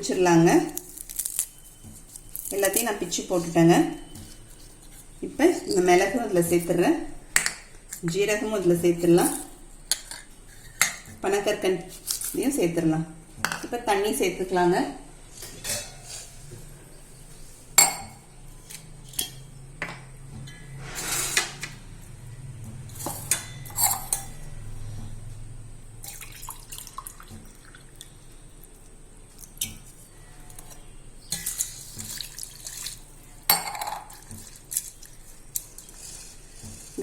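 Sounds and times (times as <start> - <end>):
water pouring into a pot: 26.0 - 28.1, 31.4 - 33.1.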